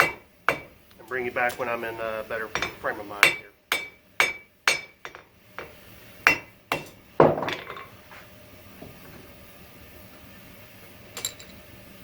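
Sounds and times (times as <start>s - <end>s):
hammer striking steel on anvil: 0.0s - 0.8s, 2.4s - 7.9s
metallic ringing: 2.4s - 5.3s
metallic clink: 11.2s - 11.6s.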